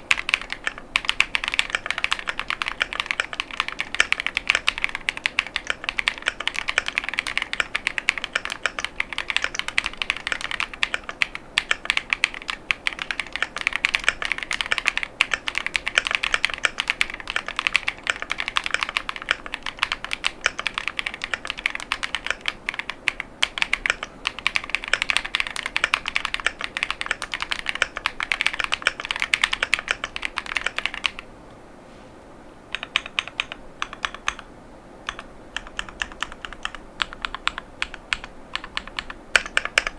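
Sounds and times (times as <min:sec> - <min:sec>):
mechanical keyboard typing: 0:00.1 - 0:31.2, 0:32.7 - 0:34.5, 0:35.1 - 0:39.9.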